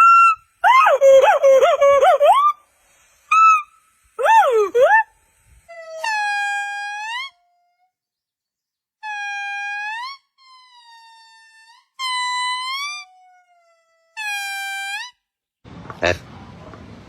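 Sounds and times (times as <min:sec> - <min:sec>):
monkey calling: 0:00.0 - 0:02.6, 0:03.3 - 0:07.6.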